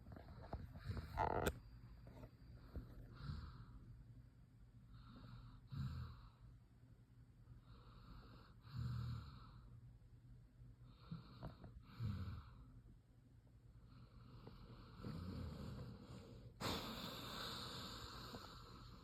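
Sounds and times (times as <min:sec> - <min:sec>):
faint snoring: 0:00.0 - 0:01.6, 0:02.6 - 0:03.8, 0:04.9 - 0:06.5, 0:07.6 - 0:09.8, 0:10.8 - 0:12.8, 0:13.8 - 0:19.0
hissing inhale: 0:15.7 - 0:19.0.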